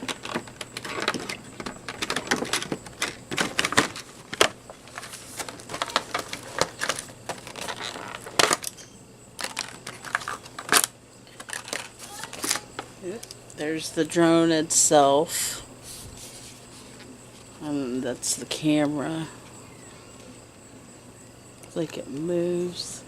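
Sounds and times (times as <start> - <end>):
plastic packaging crinkling and clicking: 0.0 - 13.4.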